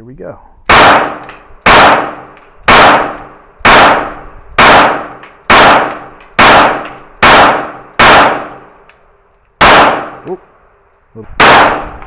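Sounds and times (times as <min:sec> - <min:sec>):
loud gunshots with echo: 0:00.7 - 0:08.7, 0:09.6 - 0:10.3, 0:11.4 - 0:12.0.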